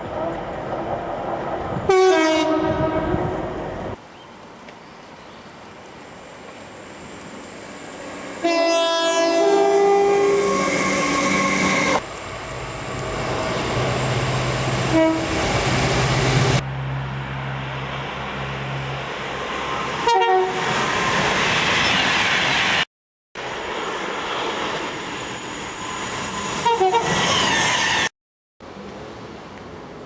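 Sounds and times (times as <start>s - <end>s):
running train noise: 0.0s - 22.8s, 23.4s - 28.1s
train horn toots: 1.9s - 3.4s, 8.4s - 12.0s, 14.8s - 15.4s, 20.0s - 20.6s, 26.6s - 27.2s.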